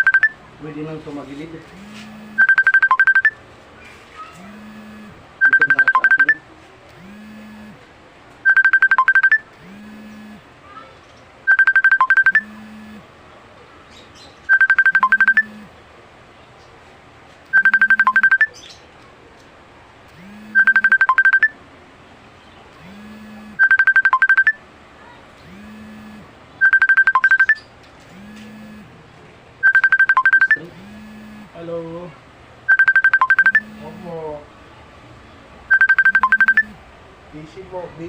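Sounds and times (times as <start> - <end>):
phone ringing electronic trill: 0.0 - 0.4, 1.7 - 3.4, 4.4 - 6.4, 7.0 - 7.8, 8.5 - 10.4, 11.5 - 13.0, 14.5 - 15.8, 17.5 - 18.6, 20.1 - 21.6, 22.8 - 24.6, 25.4 - 27.6, 28.2 - 28.9, 29.6 - 31.6, 32.7 - 34.2, 35.7 - 36.8.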